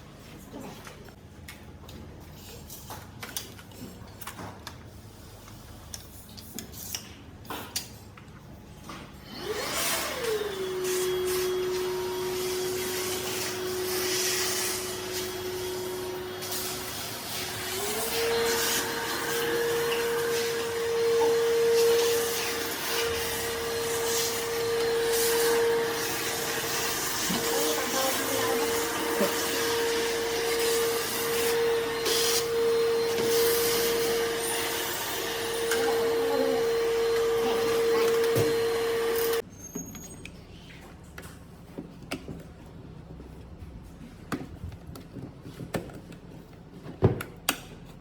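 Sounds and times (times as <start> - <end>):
vacuum motor whine: 9.2 - 39.4.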